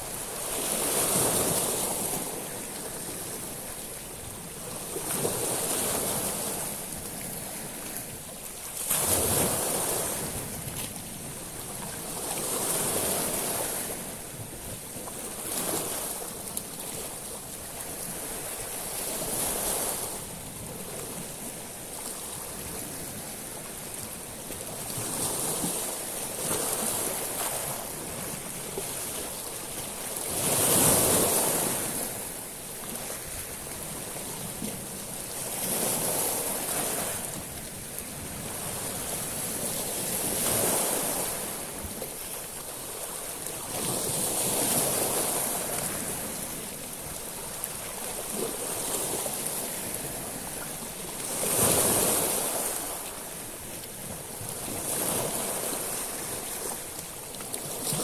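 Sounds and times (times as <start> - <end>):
waves washing over pebbles: 0.0 - 58.0.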